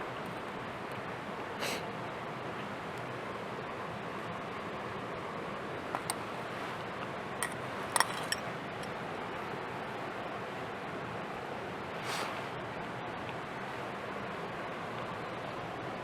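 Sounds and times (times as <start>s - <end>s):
steady outdoor hiss: 0.0s - 16.0s
sharp clicks or clinks: 6.0s - 6.2s, 7.4s - 8.9s.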